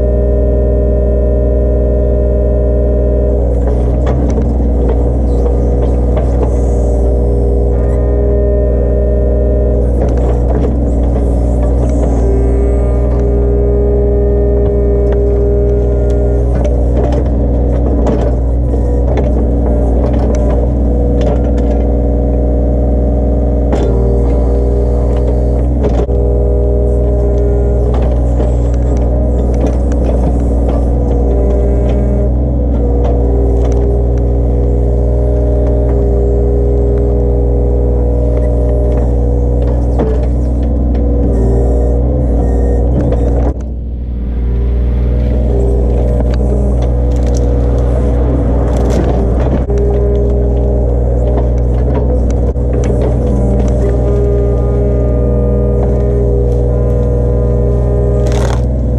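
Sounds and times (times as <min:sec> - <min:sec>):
diesel engine running: 0:00.0 - 0:58.9
hydraulic whine: 0:00.0 - 0:58.9
knocks and clanks: 0:45.1 - 0:58.8.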